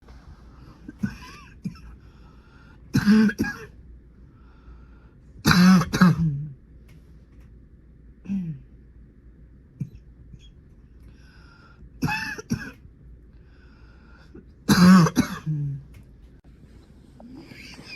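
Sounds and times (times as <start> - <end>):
person coughing: 0.8 - 2.0, 2.9 - 3.7, 5.5 - 6.5, 8.3 - 8.6, 12.0 - 12.8, 14.7 - 15.9
throat-clearing cough: 0.8 - 2.0, 3.0 - 3.7, 5.5 - 6.5, 12.0 - 12.8, 14.7 - 15.8.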